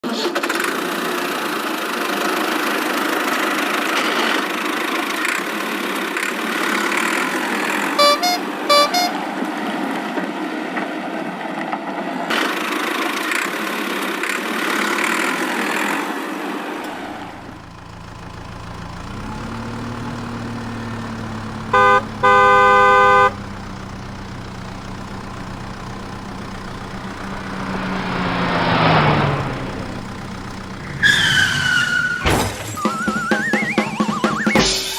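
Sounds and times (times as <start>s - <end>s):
horn toots: 8.0s - 9.2s, 17.1s - 32.2s
cartoon engine rumble: 17.0s - 31.6s.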